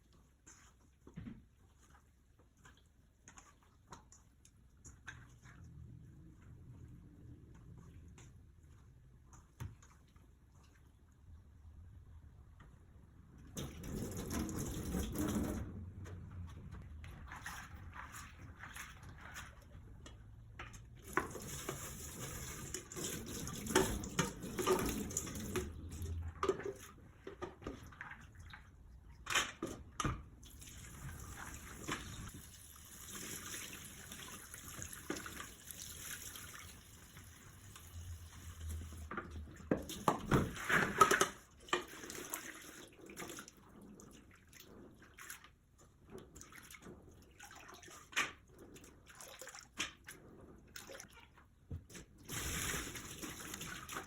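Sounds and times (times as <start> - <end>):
tap water running into sink: 13.6 - 15.7, 21.0 - 26.8
water splashing: 52.2 - 54.0.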